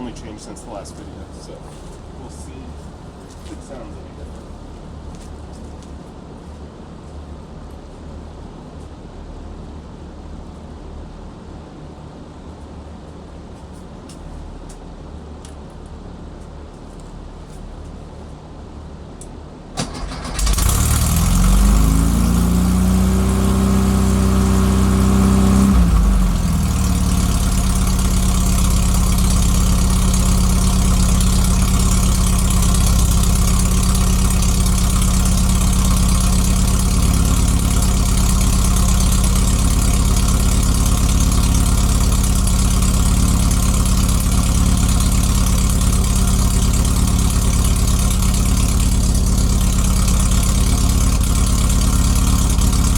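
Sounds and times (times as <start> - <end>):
air-cooled engine starting and idling: 19.7 - 52.9.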